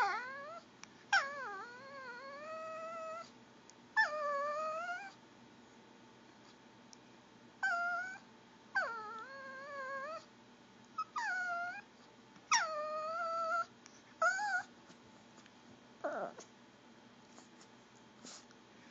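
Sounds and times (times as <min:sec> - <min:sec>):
dog whining: 0:00.0 - 0:03.4, 0:04.0 - 0:05.2, 0:07.6 - 0:10.3, 0:10.9 - 0:11.9, 0:12.5 - 0:14.8, 0:16.0 - 0:16.5.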